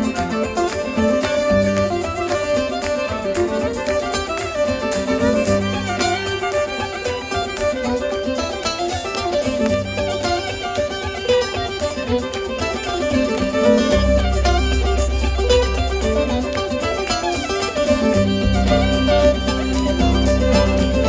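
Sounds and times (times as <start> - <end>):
drums beating: 0.0 - 21.0
fiddle melody: 0.0 - 21.0
bass line: 13.9 - 16.8, 18.1 - 21.0.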